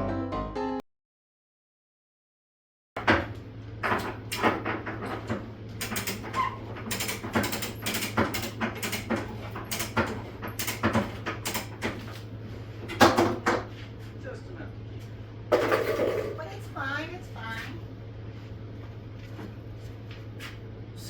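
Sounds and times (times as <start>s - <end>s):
low electrical hum: 3.0s - 21.0s
metallic clicks and clanks of tools: 3.9s - 12.0s.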